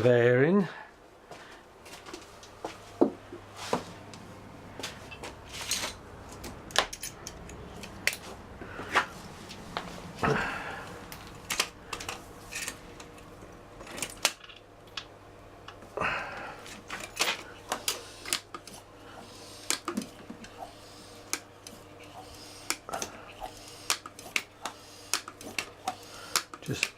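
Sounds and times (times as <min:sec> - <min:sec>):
hand tools clicking and tapping: 0:19.6 - 0:20.6, 0:21.3 - 0:26.9.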